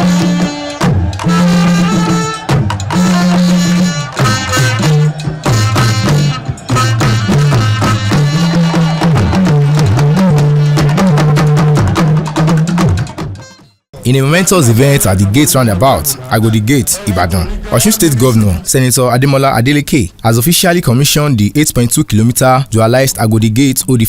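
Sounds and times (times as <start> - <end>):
hand drums and percussion: 0.0 - 13.7.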